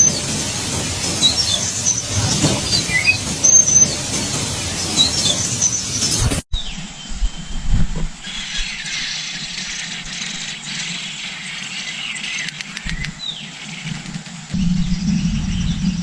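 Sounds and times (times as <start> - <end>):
outdoor ambience hiss: 0.0 - 16.0
bird whistles: 1.2 - 4.0.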